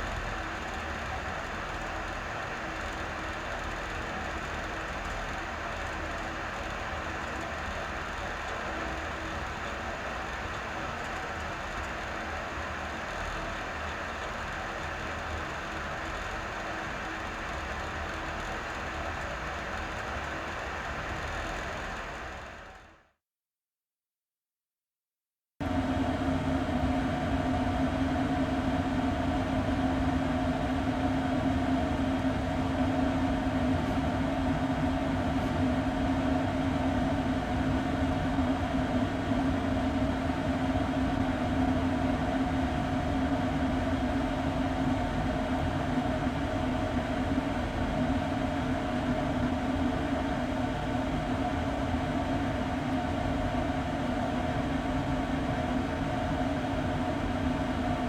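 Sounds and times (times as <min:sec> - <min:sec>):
ventilation duct humming: 0:25.6 - 0:58.0.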